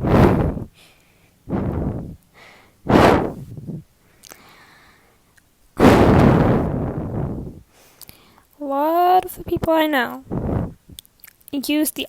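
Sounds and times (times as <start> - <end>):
person breathing heavily: 0.0 - 5.2.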